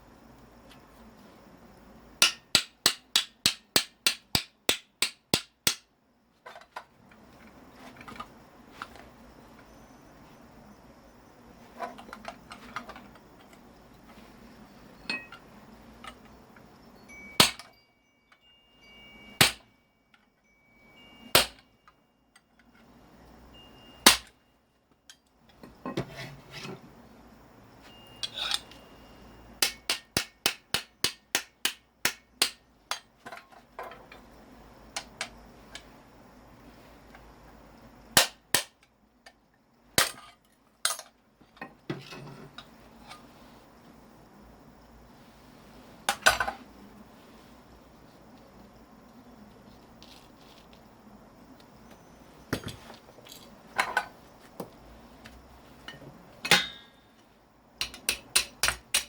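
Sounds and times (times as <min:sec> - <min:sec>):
hammer striking metal: 0:02.2 - 0:05.8, 0:17.4 - 0:17.7, 0:19.4 - 0:19.7, 0:21.4 - 0:21.6, 0:24.0 - 0:24.3, 0:29.6 - 0:33.0, 0:56.5 - 0:57.0.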